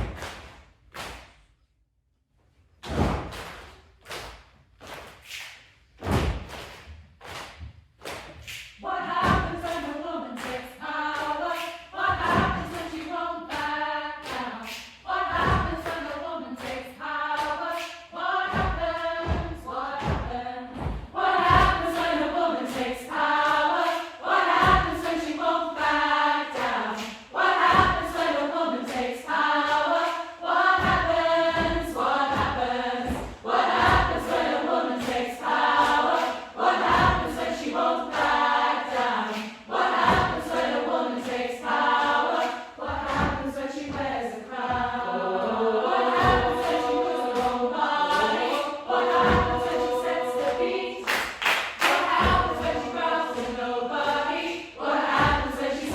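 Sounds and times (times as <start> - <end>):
choir singing in harmony: 8.8 - 55.9
low thumps: 18.5 - 22.3, 27.6 - 28.2, 30.6 - 34.6, 36.8 - 37.5, 42.9 - 45.2, 45.9 - 47.0, 48.9 - 50.6, 52.0 - 53.6.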